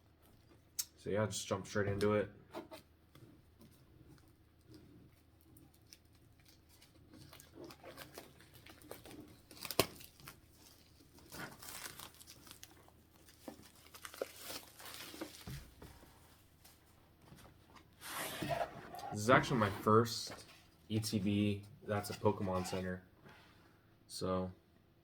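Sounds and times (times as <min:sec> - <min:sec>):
plastic wrapping tearing and crinkling: 0:05.2 - 0:15.8.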